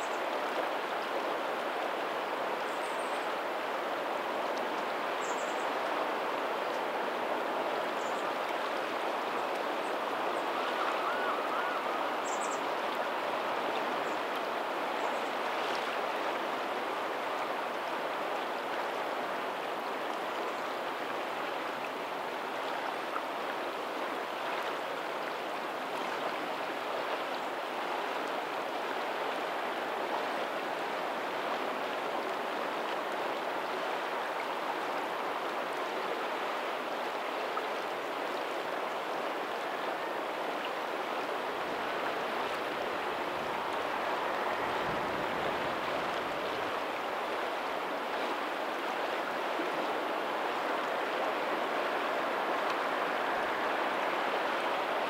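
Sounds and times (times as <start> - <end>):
faint ocean surf: 0.0 - 55.0
water rushing over pebbles: 36.7 - 55.0.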